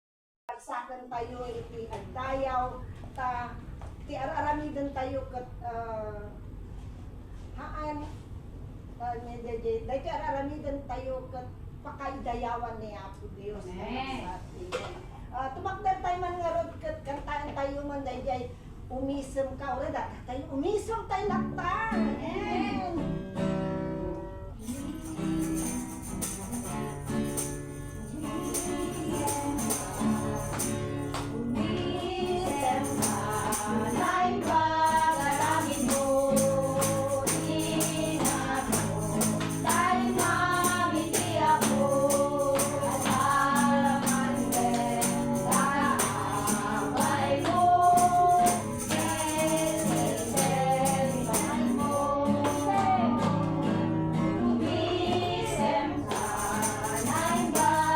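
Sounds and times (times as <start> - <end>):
strummed guitar: 21.4 - 57.9
shaken tambourine: 24.6 - 57.9
group singing worship song: 28.1 - 57.9.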